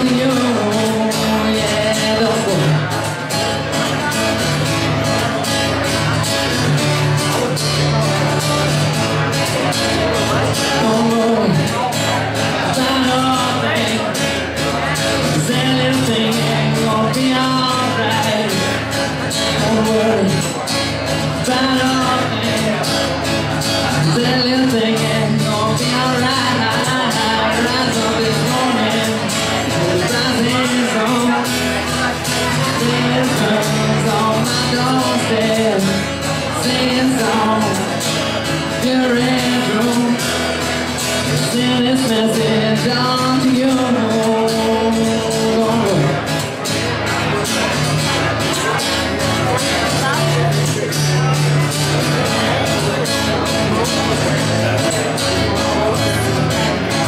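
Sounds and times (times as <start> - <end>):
band music with singing: 0.0 - 57.0.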